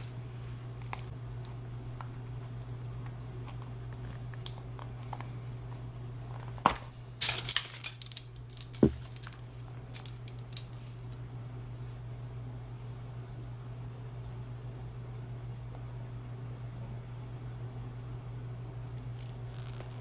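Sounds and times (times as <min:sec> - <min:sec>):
steady low hum: 0:00.0 - 0:20.0
small clicks and rattles: 0:07.2 - 0:11.2.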